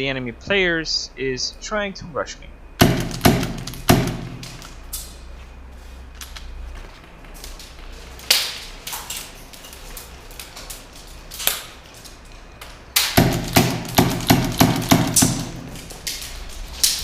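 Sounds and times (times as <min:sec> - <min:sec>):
airsoft gunfire: 0:02.8 - 0:04.5, 0:13.0 - 0:15.8.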